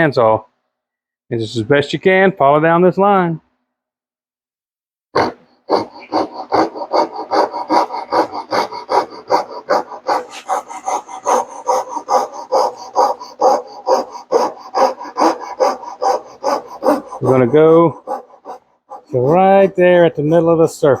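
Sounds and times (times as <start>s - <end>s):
hand saw cutting wood: 5.2s - 21.0s.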